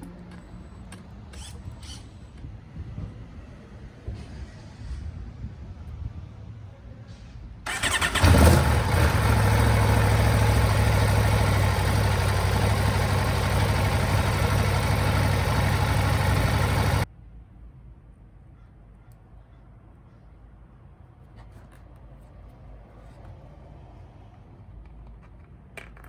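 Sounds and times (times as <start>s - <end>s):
motorcycle engine idling: 7.7s - 17.0s
motorcycle starter cranking: 7.7s - 17.0s.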